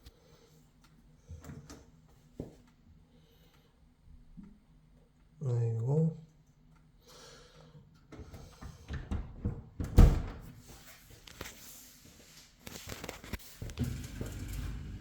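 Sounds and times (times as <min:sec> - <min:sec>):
drain pump humming: 0:13.7 - 0:15.0.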